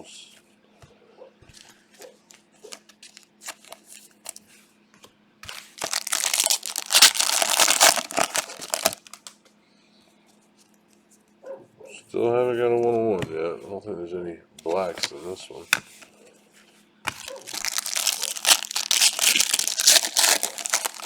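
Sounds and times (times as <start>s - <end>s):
wrapper crinkling and tearing: 2.6s - 4.4s, 5.4s - 9.3s, 17.1s - 21.0s.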